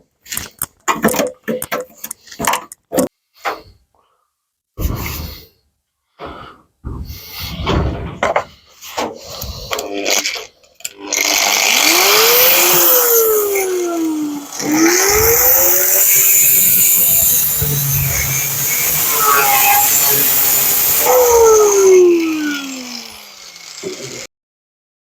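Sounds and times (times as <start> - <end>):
power tool running on metal: 11.1 - 24.3.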